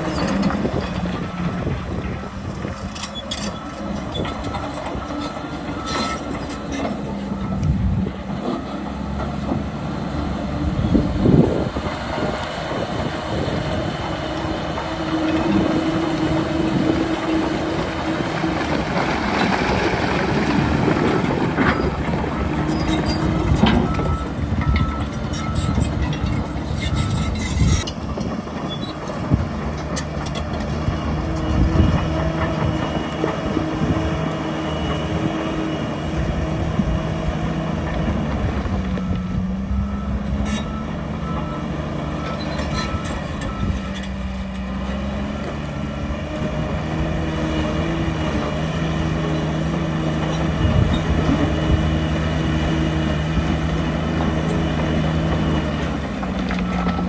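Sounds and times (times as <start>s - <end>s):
heavy diesel machinery running: 0.0s - 57.0s
clanks of metal and rock: 2.7s - 7.6s
reversing alarm beeping: 4.0s - 9.2s, 21.1s - 29.0s, 38.8s - 44.4s.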